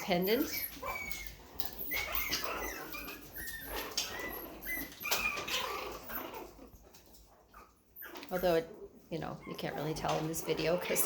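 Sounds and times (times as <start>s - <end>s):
puppies whining and yipping: 0.0s - 11.0s.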